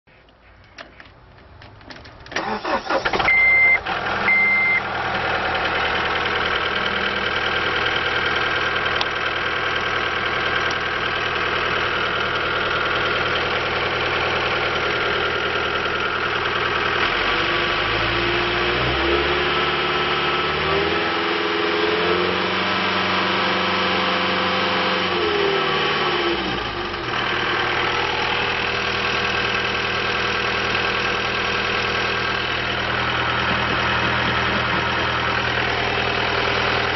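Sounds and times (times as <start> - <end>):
diesel engine starting and idling: 1.5 - 36.9
diesel engine revving: 2.4 - 36.9
short high electronic beeps: 3.2 - 4.8.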